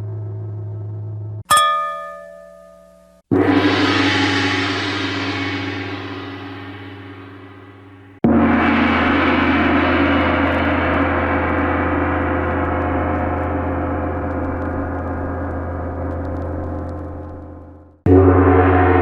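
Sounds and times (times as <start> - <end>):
gong struck and ringing: 1.5 - 14.3, 18.1 - 19.0.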